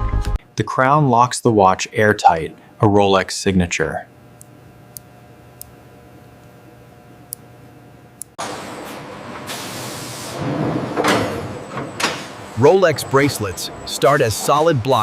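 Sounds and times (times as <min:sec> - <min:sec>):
faint machine hum: 0:00.4 - 0:09.5.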